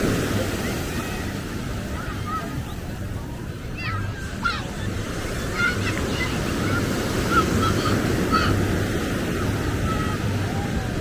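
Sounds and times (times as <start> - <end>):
surf rushing: 0.0 - 11.0
wind on microphone: 2.7 - 11.0
distant calls: 3.8 - 10.4.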